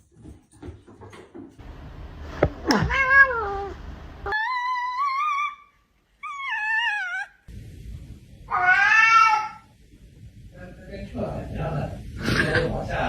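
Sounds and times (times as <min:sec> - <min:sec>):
cat meowing: 0:02.7 - 0:05.6, 0:08.5 - 0:09.7.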